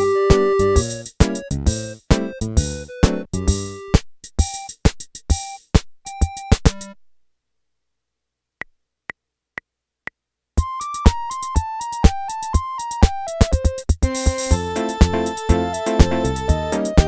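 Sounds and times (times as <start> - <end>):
keyboard song with drum rhythm: 0.0 - 7.0, 10.6 - 17.0.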